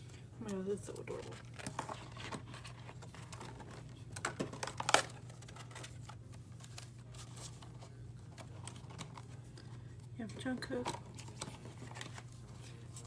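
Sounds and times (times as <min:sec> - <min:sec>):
steady low hum: 0:00.0 - 0:13.0
paper pages rustling: 0:00.9 - 0:09.8, 0:10.8 - 0:13.0.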